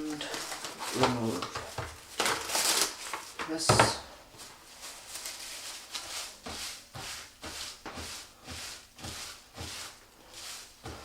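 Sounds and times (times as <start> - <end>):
wrapping rustling: 0.0 - 3.7, 4.4 - 7.8.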